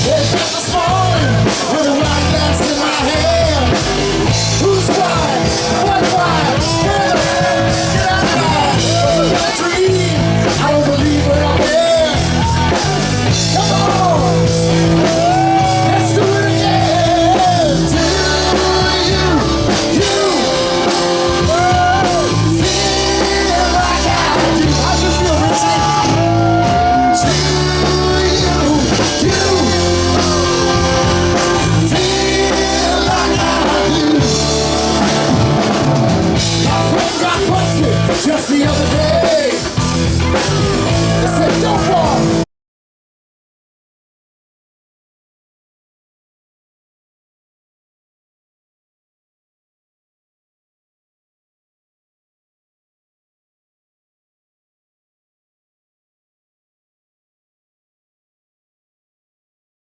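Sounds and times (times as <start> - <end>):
bass line: 0.0 - 42.4
electric guitar: 0.0 - 42.4
person singing: 0.0 - 42.4
drums: 0.0 - 42.5.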